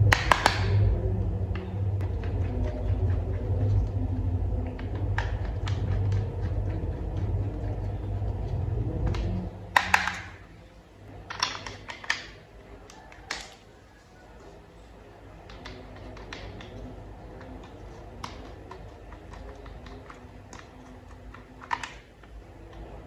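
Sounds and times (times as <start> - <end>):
low steady hum: 0.0 - 23.0
plastic parts snapping together: 0.1 - 0.9, 9.8 - 10.5, 11.2 - 13.6, 19.3 - 22.8.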